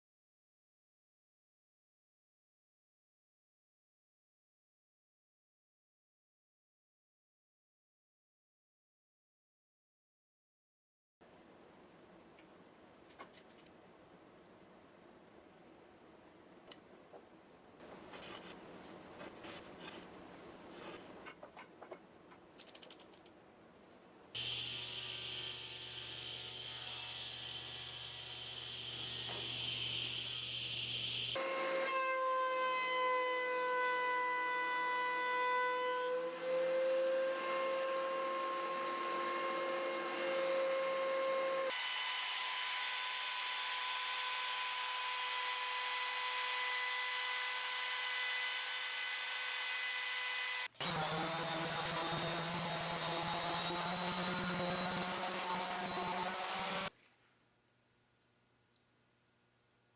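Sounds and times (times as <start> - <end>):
power tool working wood: 48.8 - 56.9.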